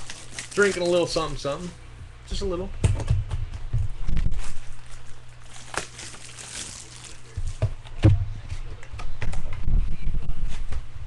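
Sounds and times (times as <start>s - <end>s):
packaging rustling: 0.0s - 1.5s, 4.2s - 7.6s.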